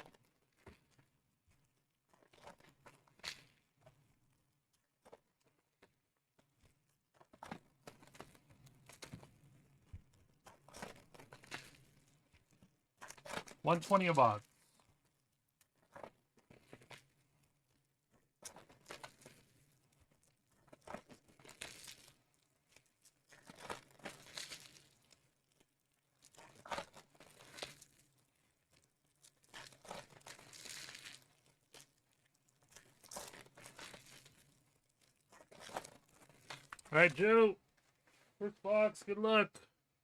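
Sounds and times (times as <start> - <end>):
plastic wrap and cardboard crinkling: 18.5 - 36.9.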